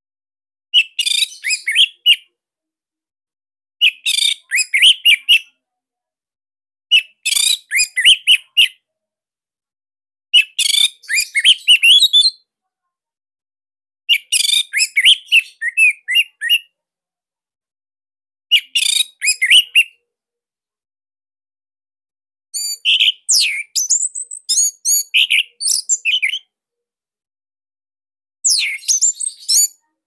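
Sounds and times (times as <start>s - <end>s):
thrush singing whistled phrases: 0.8s - 2.3s, 3.8s - 5.6s, 6.9s - 8.8s, 10.4s - 12.4s, 14.1s - 16.7s, 18.5s - 20.0s, 22.6s - 26.5s, 28.4s - 29.8s.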